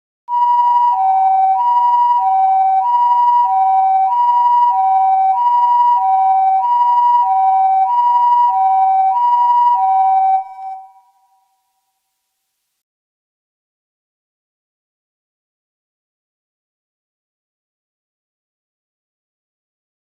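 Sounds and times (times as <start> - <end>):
two-tone siren: 0.3 - 11.6.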